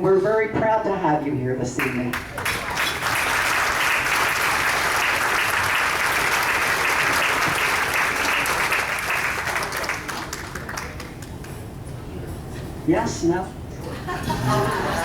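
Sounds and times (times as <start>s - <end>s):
people applauding: 1.8s - 11.6s.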